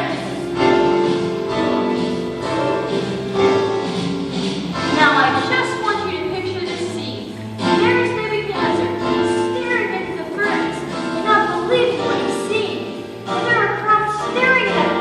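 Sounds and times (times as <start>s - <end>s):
sustained instrumental chords: 0.0s - 15.0s.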